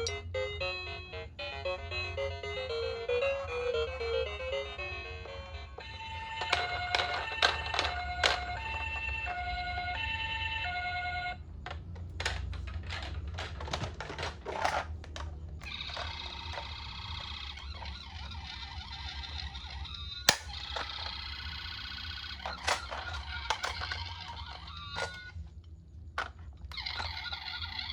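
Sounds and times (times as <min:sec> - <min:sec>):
toy electronic siren: 0:00.0 - 0:11.4, 0:15.6 - 0:25.4, 0:26.7 - 0:27.9
plastic toy clicks and knocks: 0:05.8 - 0:09.7, 0:11.7 - 0:18.3, 0:19.1 - 0:25.3, 0:26.2 - 0:27.9.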